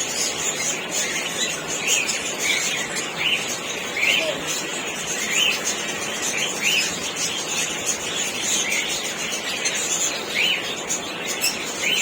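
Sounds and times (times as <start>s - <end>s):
birds chirping and chattering: 0.0s - 12.0s.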